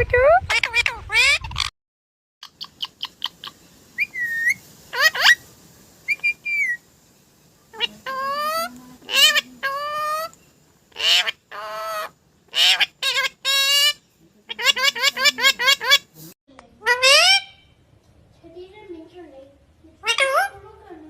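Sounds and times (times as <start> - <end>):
bird whistling and squawking: 2.4 - 5.4, 6.1 - 6.8.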